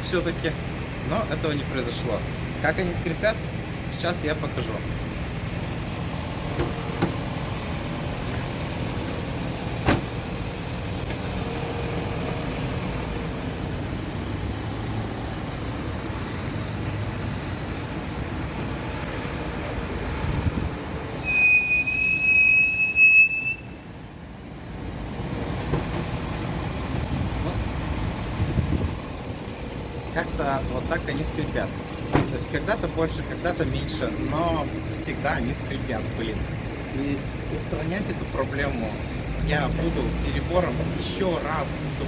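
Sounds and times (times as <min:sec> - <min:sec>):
car running noise: 0:00.0 - 0:42.0
brake pads squealing: 0:21.1 - 0:24.5, 0:29.6 - 0:42.0.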